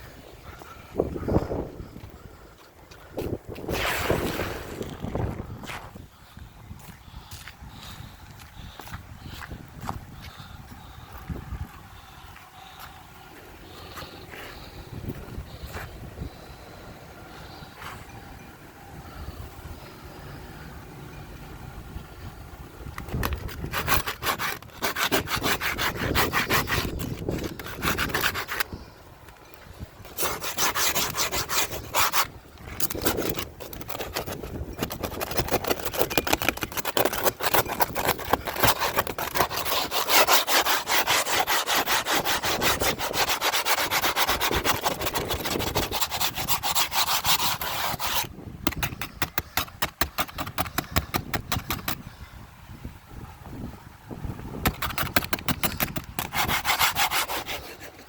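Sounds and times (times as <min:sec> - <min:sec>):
rasping scraping strokes: 0:03.2 - 0:06.0, 0:23.0 - 0:29.0, 0:29.8 - 0:52.0, 0:54.6 - 0:58.0.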